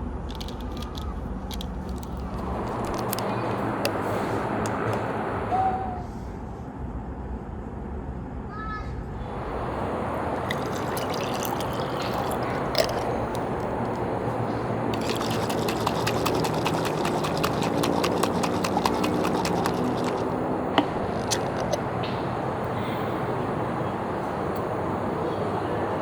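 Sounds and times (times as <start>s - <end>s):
liquid pouring into container: 9.4s - 14.1s, 14.9s - 21.9s
quick clicks: 14.9s - 22.2s.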